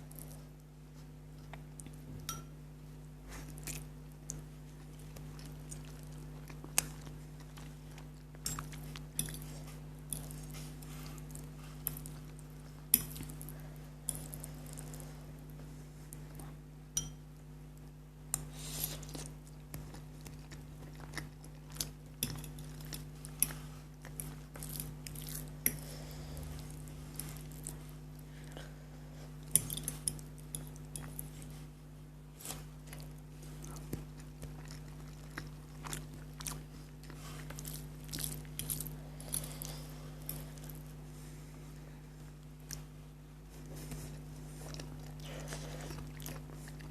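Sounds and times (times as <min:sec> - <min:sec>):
steady low hum: 0:00.0 - 0:46.9
chewing: 0:03.3 - 0:16.6, 0:17.8 - 0:28.5, 0:32.4 - 0:41.0, 0:42.2 - 0:46.9.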